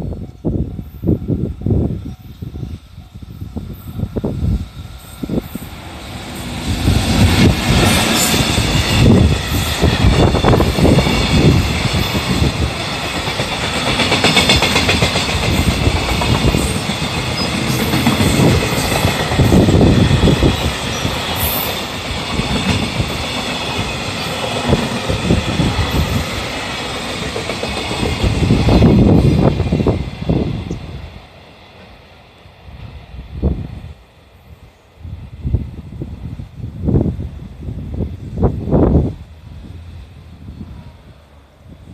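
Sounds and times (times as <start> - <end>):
freight train wheels clattering: 5.2 - 32.0.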